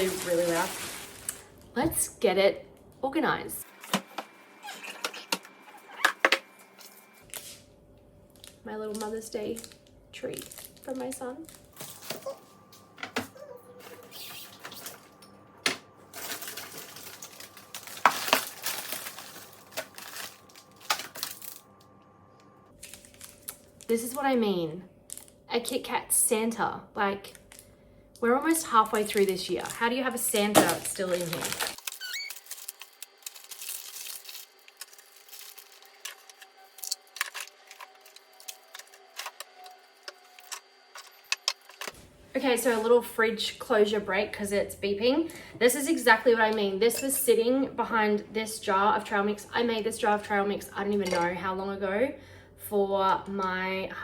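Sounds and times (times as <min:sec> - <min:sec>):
wrappers rustling: 0:00.0 - 0:01.6, 0:16.1 - 0:21.6, 0:22.7 - 0:24.3, 0:28.6 - 0:39.2.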